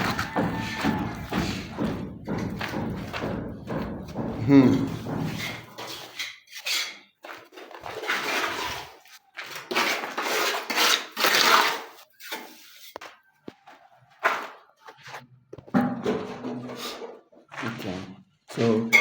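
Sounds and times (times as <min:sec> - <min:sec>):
trowel scraping mortar: 0:00.0 - 0:02.8, 0:05.0 - 0:13.0.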